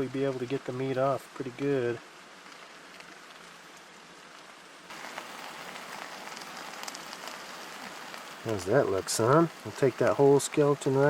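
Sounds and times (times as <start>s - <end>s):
fish sizzling in a pan: 4.8s - 11.0s.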